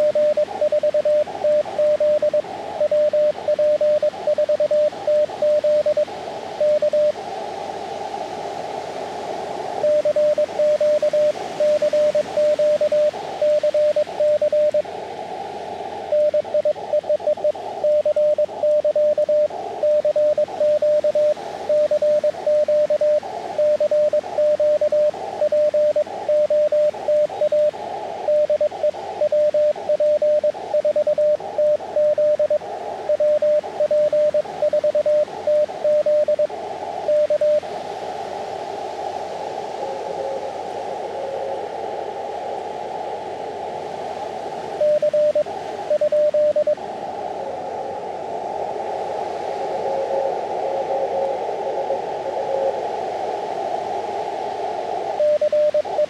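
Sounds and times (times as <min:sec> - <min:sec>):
morse code beeps: 0:00.0 - 0:06.0, 0:06.6 - 0:07.1, 0:09.8 - 0:14.8, 0:16.1 - 0:27.7, 0:28.3 - 0:36.5, 0:37.1 - 0:37.6, 0:44.8 - 0:46.8
radio receiver hiss: 0:00.0 - 0:56.0.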